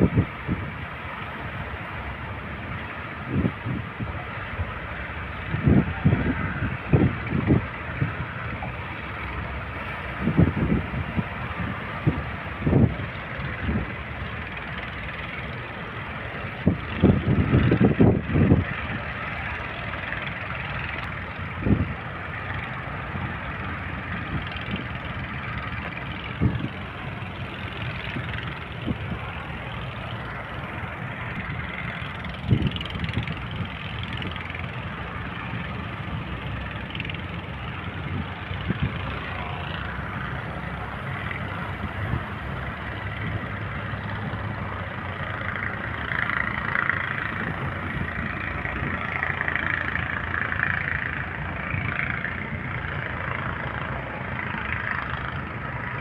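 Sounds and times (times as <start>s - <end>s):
boat engine running: 0.0s - 56.0s
water wash: 0.0s - 56.0s
wind noise: 0.0s - 56.0s.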